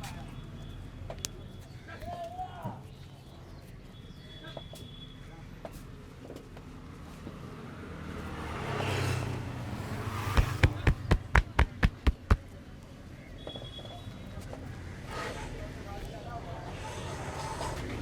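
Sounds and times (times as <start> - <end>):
passing vehicle: 6.9 - 12.4
hand slaps: 10.4 - 12.4.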